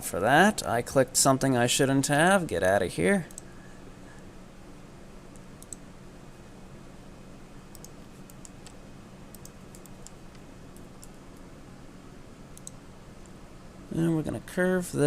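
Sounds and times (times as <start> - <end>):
low electrical hum: 0.0 - 15.0
computer mouse and keyboard clicks: 5.3 - 5.8, 7.7 - 11.2, 12.6 - 12.8.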